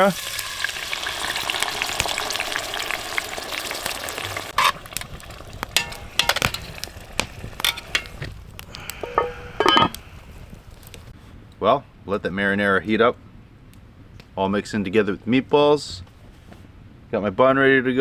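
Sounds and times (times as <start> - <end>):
sauce sizzling in a pan: 0.0 - 10.9
clinks and knocks: 5.7 - 10.0
loud clank: 5.8 - 8.3, 8.9 - 10.0.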